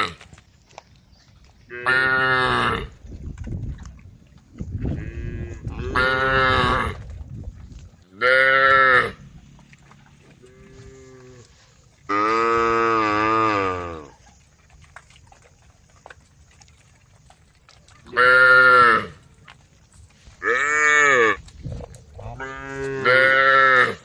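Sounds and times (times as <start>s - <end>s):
cows mooing: 1.7s - 3.0s, 4.8s - 7.0s, 8.1s - 14.2s, 18.0s - 19.4s, 20.4s - 21.5s, 22.2s - 24.0s.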